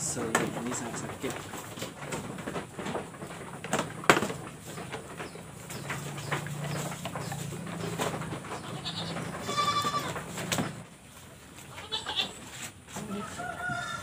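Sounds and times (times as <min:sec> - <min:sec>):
scattered knocks: 0:00.1 - 0:10.9
goat bleating: 0:08.6 - 0:10.4, 0:11.6 - 0:12.5.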